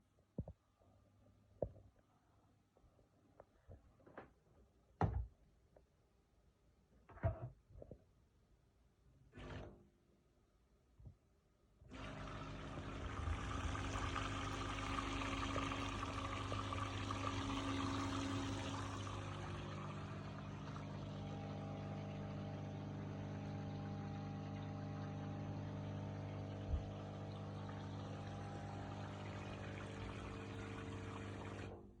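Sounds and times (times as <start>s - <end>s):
vacuum cleaner running: 11.9s - 31.8s.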